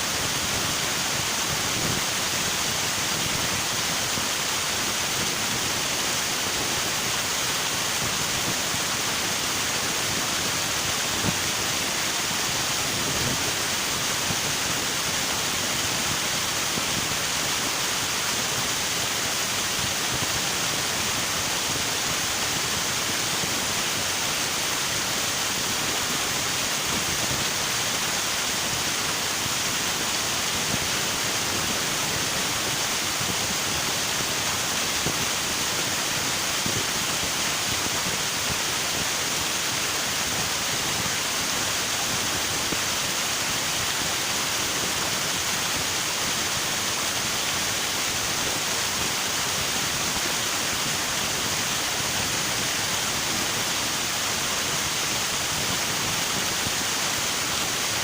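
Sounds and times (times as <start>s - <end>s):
river water rushing: 0.0s - 58.0s.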